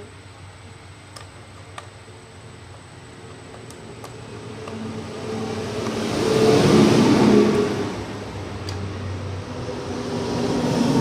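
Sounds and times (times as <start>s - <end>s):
low steady hum: 0.0s - 11.0s
vehicle engine passing by: 4.4s - 11.0s.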